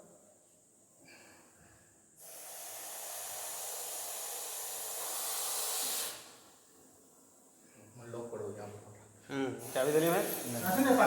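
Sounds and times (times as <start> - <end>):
snake hissing: 2.2 - 6.6.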